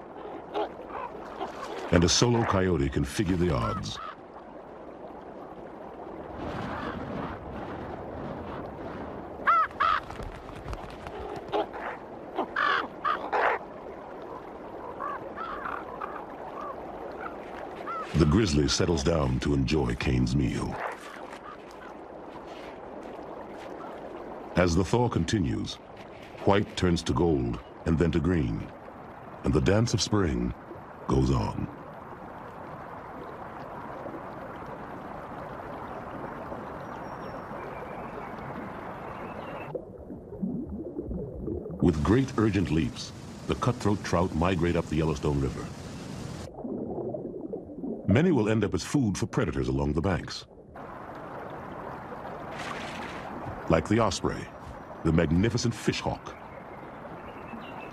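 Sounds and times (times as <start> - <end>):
stream water rushing: 0.0 - 39.7, 50.8 - 57.9
crows cawing: 9.4 - 10.2, 11.5 - 13.6, 15.0 - 18.2.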